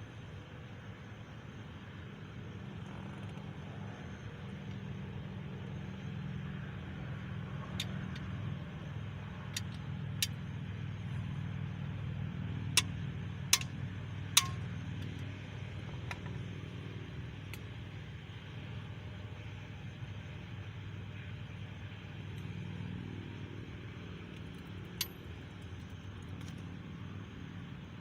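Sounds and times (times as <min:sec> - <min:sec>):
steady low hum: 0:00.0 - 0:28.0
sharp metallic clinks: 0:12.7 - 0:16.4, 0:24.3 - 0:26.6.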